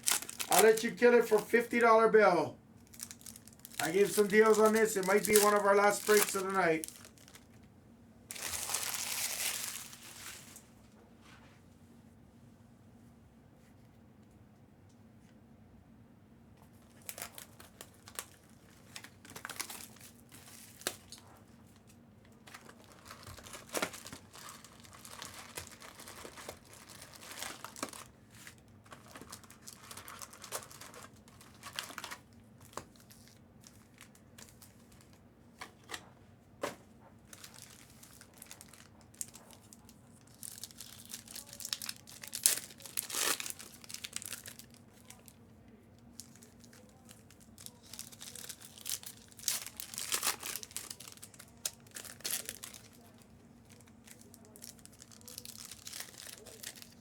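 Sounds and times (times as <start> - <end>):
packaging crinkling: 0.0 - 1.9, 2.8 - 7.6, 8.3 - 10.6, 16.8 - 36.0, 37.3 - 45.4, 46.1 - 57.0
faint steady hum: 0.0 - 57.0.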